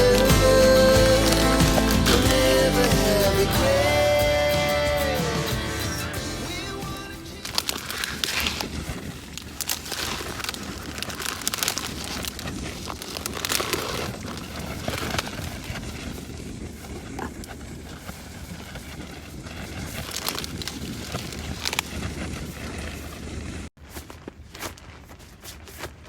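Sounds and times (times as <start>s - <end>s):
crackling and rustling: 0.0s - 3.8s, 6.0s - 26.0s
wind buffeting microphone: 7.3s - 23.7s.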